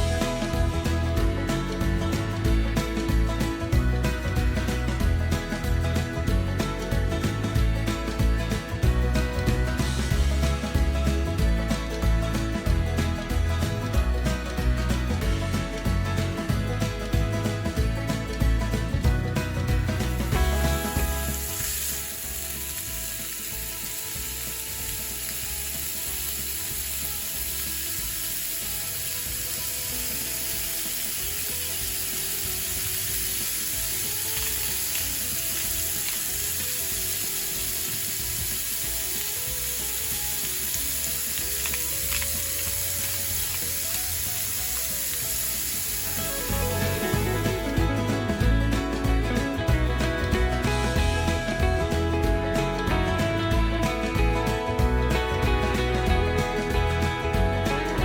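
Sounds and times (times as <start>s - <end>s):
faint crackles: 0.0s - 58.0s
sizzling hiss: 20.0s - 52.3s.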